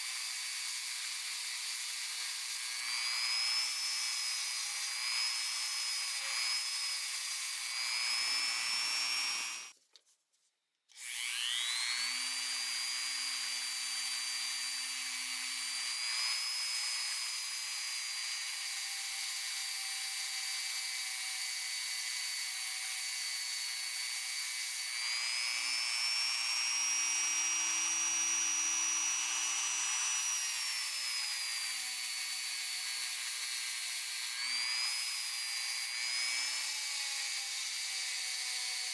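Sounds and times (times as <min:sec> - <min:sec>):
rotary tool whining: 0:00.1 - 0:09.7, 0:10.9 - 0:38.9.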